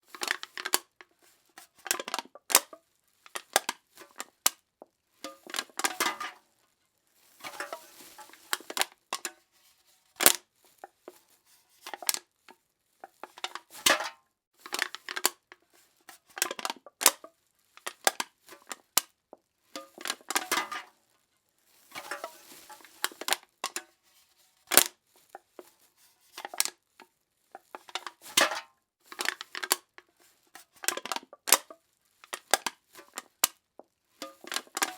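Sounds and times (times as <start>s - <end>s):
aluminum cans being crushed: 0.1s - 2.8s, 5.2s - 6.4s, 7.4s - 9.4s, 13.0s - 15.5s, 16.2s - 18.9s, 19.8s - 20.9s, 21.9s - 23.9s, 27.6s - 33.6s, 34.2s - 34.9s.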